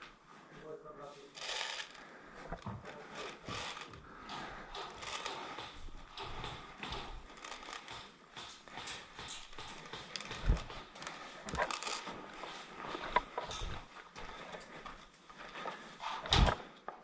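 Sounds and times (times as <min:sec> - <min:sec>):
clothing and gear rustling: 0:00.0 - 0:08.7, 0:09.3 - 0:17.0
footsteps: 0:00.0 - 0:17.0
dull thumps: 0:02.5 - 0:15.0.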